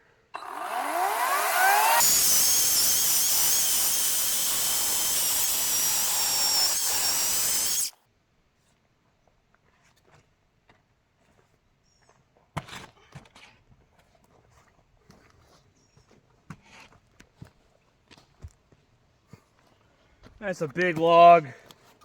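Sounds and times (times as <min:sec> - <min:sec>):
electric chainsaw whining: 0:00.4 - 0:07.9.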